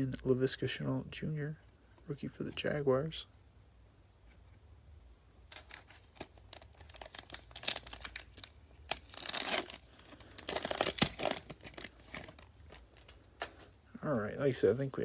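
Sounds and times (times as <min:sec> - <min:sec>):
card pack wrapper crinkling: 0:05.5 - 0:13.7.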